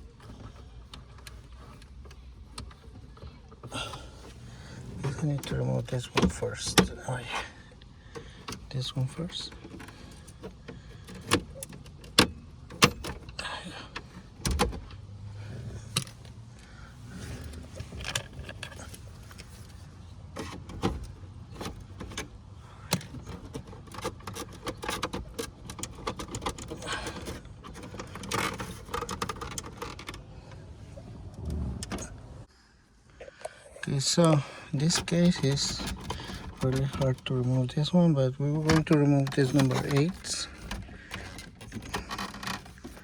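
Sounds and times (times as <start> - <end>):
tools clicking and scraping on plastic: 7.8 - 15.0, 17.3 - 30.3, 34.8 - 37.9, 38.6 - 43.0.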